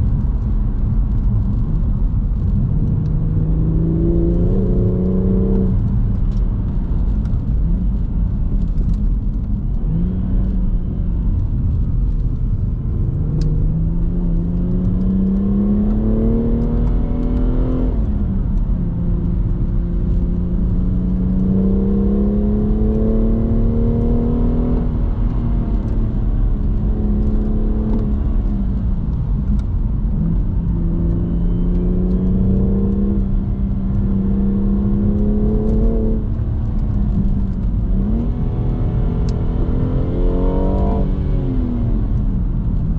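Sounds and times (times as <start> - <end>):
car engine accelerating: 0.0 - 42.9
road and tyre rumble: 0.0 - 42.9.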